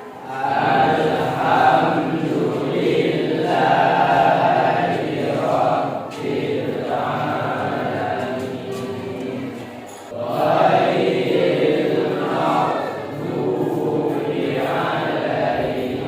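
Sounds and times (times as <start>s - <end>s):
group reciting prayer in unison: 0.0s - 16.0s.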